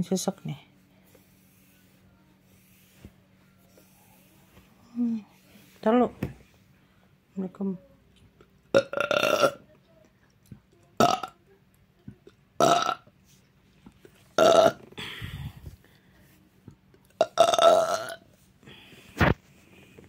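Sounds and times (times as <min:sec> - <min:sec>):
person belching: 0:08.7 - 0:09.6, 0:11.0 - 0:11.4, 0:12.6 - 0:13.1, 0:14.4 - 0:14.9, 0:17.2 - 0:18.2.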